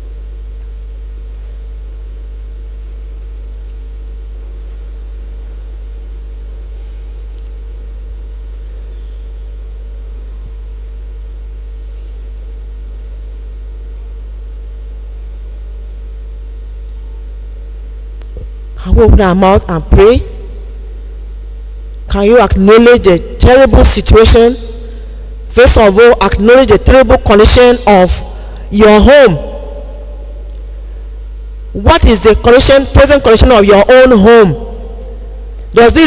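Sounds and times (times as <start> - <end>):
low electrical hum: 0.0 - 36.0.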